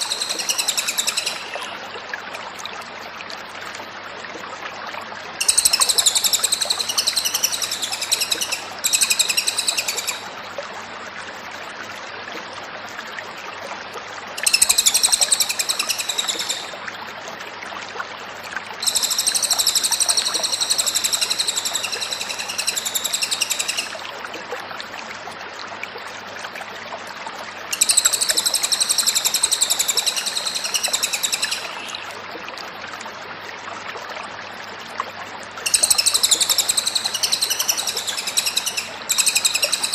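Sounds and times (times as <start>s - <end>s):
bird singing high wavering trills: 0.0s - 1.8s, 5.4s - 10.4s, 14.4s - 16.8s, 18.8s - 24.0s, 27.7s - 32.1s, 35.7s - 39.9s.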